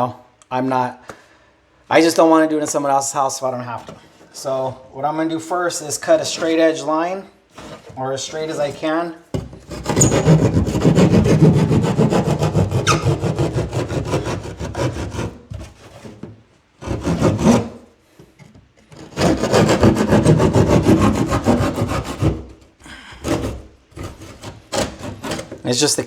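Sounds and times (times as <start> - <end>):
hand saw cutting drywall: 6.1 - 6.8, 7.5 - 17.9, 18.9 - 25.9.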